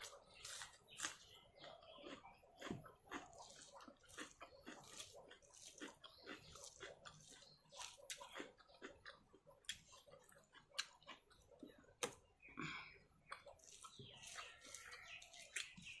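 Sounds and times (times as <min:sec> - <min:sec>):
chewing: 0:00.0 - 0:12.3, 0:13.2 - 0:16.0.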